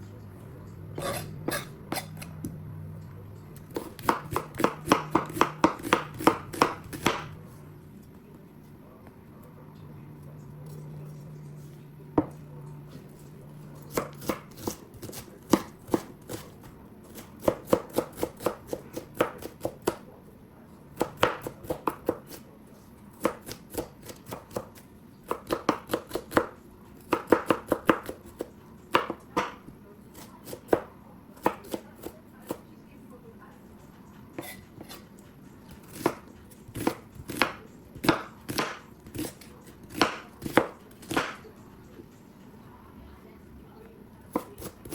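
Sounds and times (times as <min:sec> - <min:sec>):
low steady hum: 0:00.0 - 0:21.8
knife chopping on cutting board: 0:01.0 - 0:02.3, 0:03.6 - 0:07.4, 0:13.8 - 0:20.0, 0:21.0 - 0:22.4, 0:23.2 - 0:32.6, 0:34.4 - 0:35.1, 0:35.7 - 0:41.5, 0:44.3 - 0:44.9.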